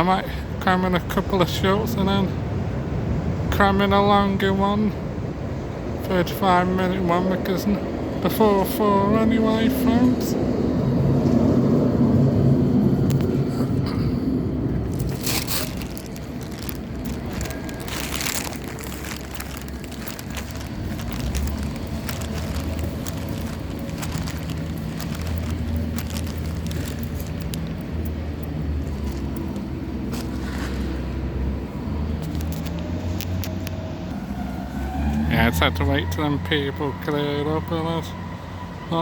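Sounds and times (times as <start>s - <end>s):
vehicle engine noise: 0.3s - 39.0s
steady low engine hum: 4.9s - 34.7s
clicks and crackles: 14.8s - 30.3s, 32.2s - 33.8s.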